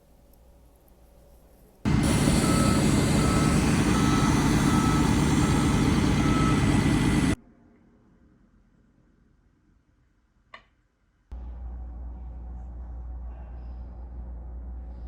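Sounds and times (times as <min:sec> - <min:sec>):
loud steady noise: 0:01.9 - 0:07.4
vehicle reversing alarm beeping: 0:01.9 - 0:07.4.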